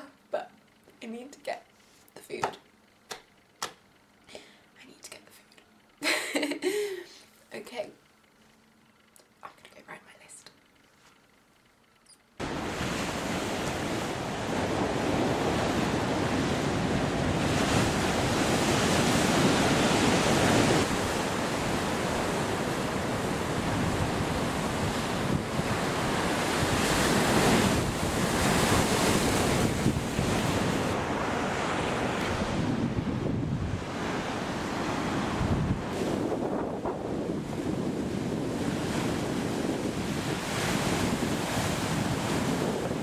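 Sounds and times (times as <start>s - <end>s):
wind buffeting microphone: 12.4s - 34.4s, 35.2s - 43.0s
sea waves breaking: 12.4s - 43.0s.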